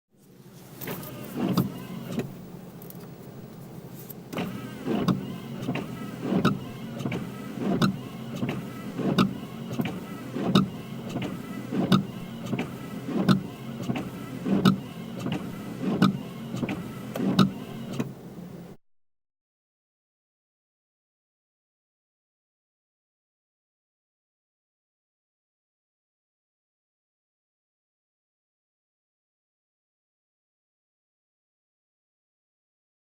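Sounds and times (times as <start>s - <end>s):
wiper motor hum: 0.5s - 18.8s
wiper blades sweeping: 4.4s - 17.9s.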